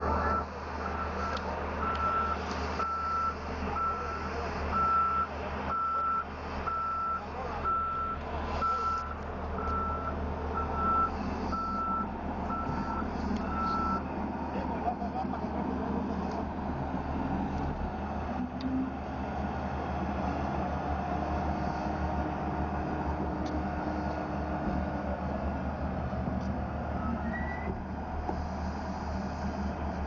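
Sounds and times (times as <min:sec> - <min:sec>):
diesel engine hum: 0:00.0 - 0:30.0
reversing alarm beeping: 0:00.2 - 0:14.0.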